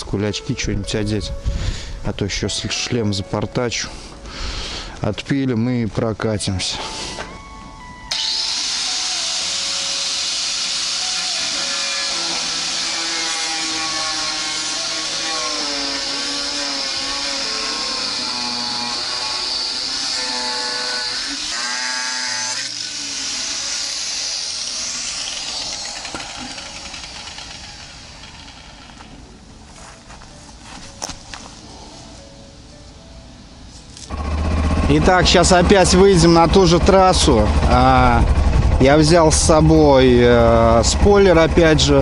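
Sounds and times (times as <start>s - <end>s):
angle grinder cutting plastic: 8.1s - 29.2s.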